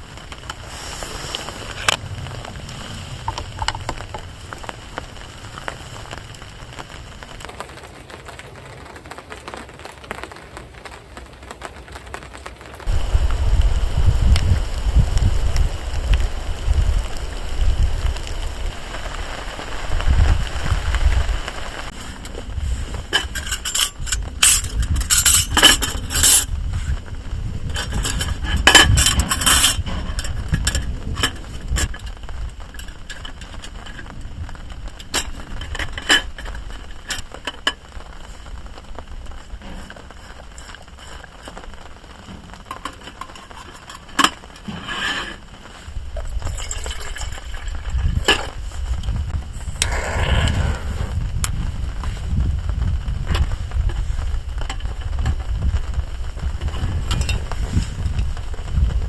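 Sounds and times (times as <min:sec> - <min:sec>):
low steady rumble: 0:00.0 - 0:07.5, 0:12.9 - 0:28.7.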